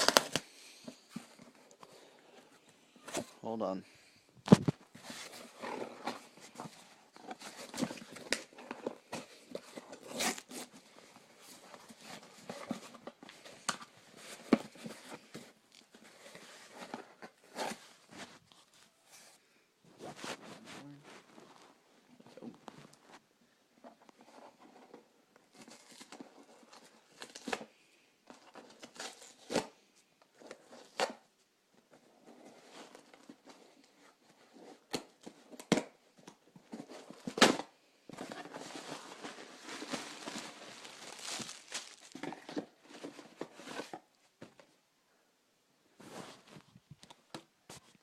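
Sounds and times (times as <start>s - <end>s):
packaging crinkling and rustling: 0.0s - 0.5s, 34.6s - 44.1s
cardboard box tearing: 38.3s - 42.7s.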